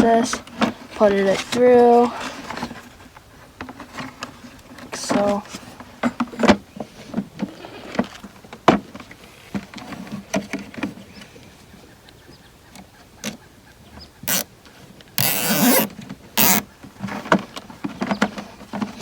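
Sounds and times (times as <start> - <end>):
zip tie ratcheting: 14.3 - 14.5, 15.2 - 16.6.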